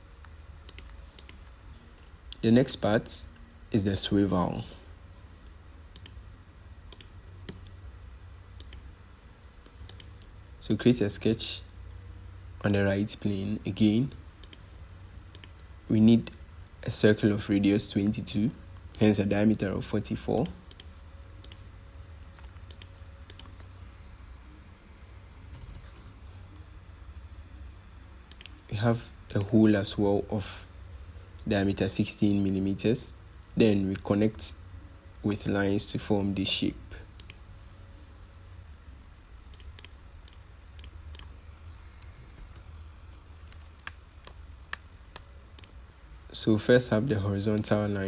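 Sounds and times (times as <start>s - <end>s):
low steady hum: 0.0s - 48.0s
keyboard and mouse clicks: 0.2s - 2.4s, 5.9s - 6.2s, 6.9s - 7.8s, 8.6s - 8.9s, 9.8s - 10.3s, 14.4s - 14.7s, 15.3s - 15.6s, 20.4s - 21.6s, 22.4s - 23.8s, 25.5s - 26.2s, 28.3s - 28.6s, 37.2s - 37.4s, 39.5s - 42.7s, 43.4s - 45.8s.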